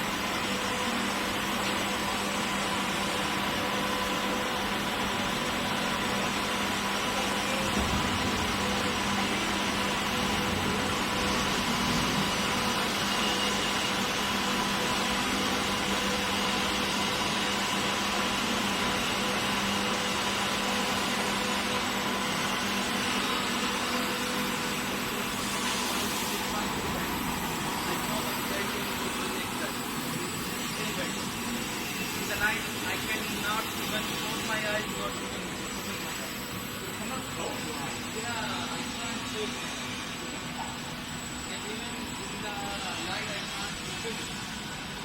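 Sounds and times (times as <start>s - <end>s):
welding machine humming: 0.0s - 45.0s
welding hiss: 7.2s - 14.8s, 24.8s - 39.6s.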